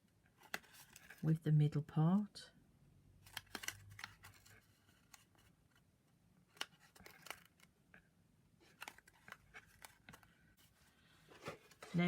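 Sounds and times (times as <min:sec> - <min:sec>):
card and tape rustling: 0:00.4 - 0:01.2, 0:03.2 - 0:05.8, 0:06.5 - 0:07.7, 0:08.6 - 0:12.0.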